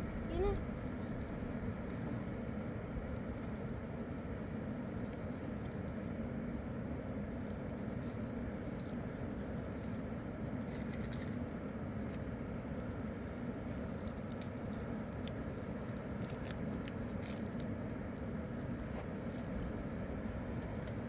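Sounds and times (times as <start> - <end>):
small clicks and rattles: 7.4 - 21.0.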